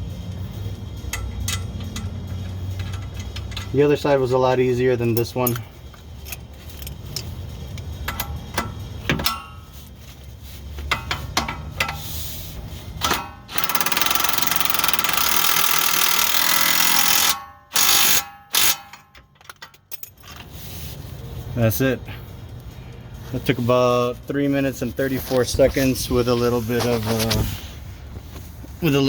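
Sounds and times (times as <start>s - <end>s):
tools clicking and clinking: 0.2s - 4.2s, 5.0s - 10.0s, 10.6s - 12.2s, 13.0s - 20.6s
power tool rattling: 13.0s - 19.6s.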